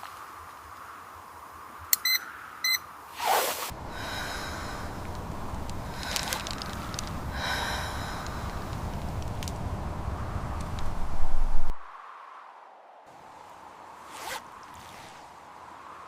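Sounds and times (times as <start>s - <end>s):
short electronic beeps: 2.0s - 2.8s
steady low rumbling: 3.7s - 11.9s.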